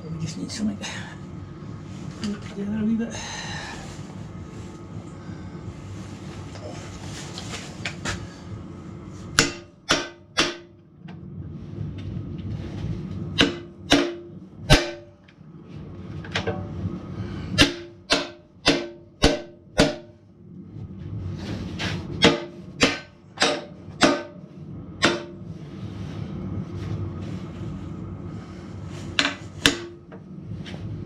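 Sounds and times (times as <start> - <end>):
heater humming: 0.0 - 31.0
hammer striking steel: 9.4 - 10.8, 13.4 - 15.2, 17.6 - 20.2, 22.2 - 24.4, 25.0 - 25.4, 29.2 - 30.0.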